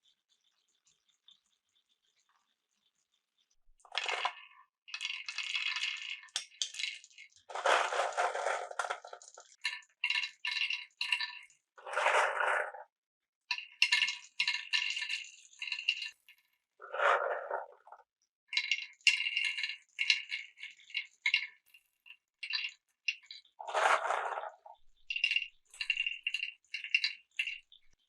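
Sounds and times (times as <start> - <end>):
marbles rolling on wooden run: 3.9 - 12.8, 16.8 - 18.0, 22.4 - 27.8.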